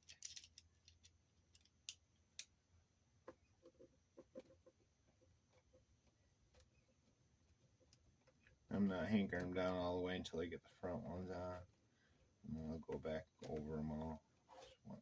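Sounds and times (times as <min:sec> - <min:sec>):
small metal parts handled: 0:00.0 - 0:02.5.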